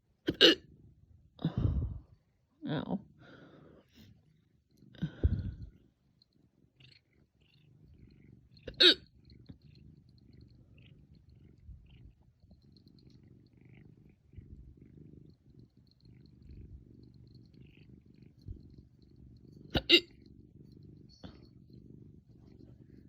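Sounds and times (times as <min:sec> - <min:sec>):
loud sharp hiccup: 0:00.3 - 0:00.6, 0:08.7 - 0:09.0, 0:19.8 - 0:20.0
faint low rumble: 0:00.6 - 0:03.5, 0:04.1 - 0:23.0.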